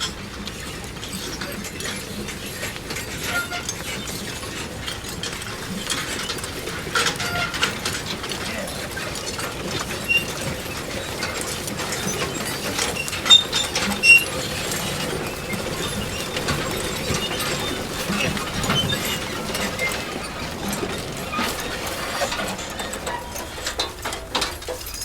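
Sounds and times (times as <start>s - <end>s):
manure spreader clattering: 0.0s - 25.0s
short high squeaks: 11.9s - 24.1s.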